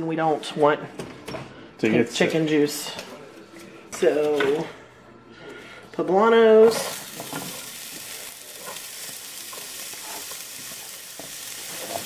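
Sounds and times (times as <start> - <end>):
peppers sizzling in oil: 6.7 - 12.0.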